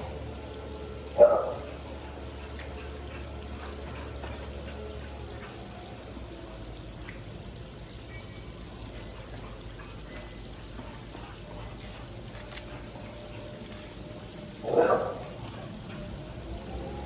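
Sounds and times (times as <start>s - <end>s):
running water: 0.0s - 17.0s.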